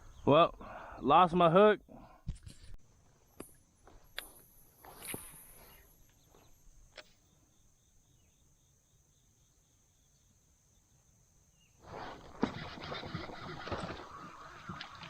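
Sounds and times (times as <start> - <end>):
insects chirping: 0.0 - 15.0.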